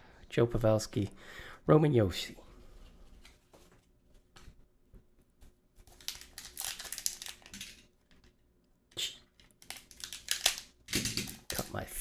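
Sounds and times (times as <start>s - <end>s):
card pack wrapper crinkling and tearing: 5.8s - 7.8s, 9.4s - 11.9s.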